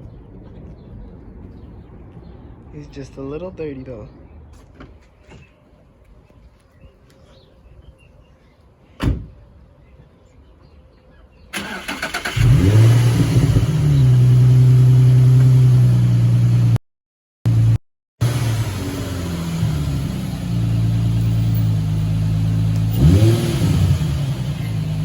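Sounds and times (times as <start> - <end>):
car engine starting and running: 11.6 - 16.8, 17.5 - 25.0.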